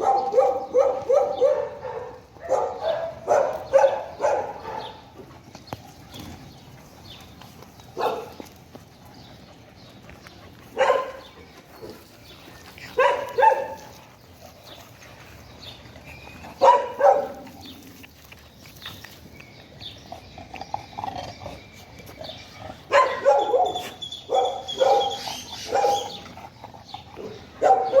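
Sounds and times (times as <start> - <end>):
dog barking: 0.0 - 5.0, 8.0 - 8.3, 10.8 - 11.2, 13.0 - 13.9, 16.6 - 17.5, 22.9 - 26.2, 27.6 - 28.0.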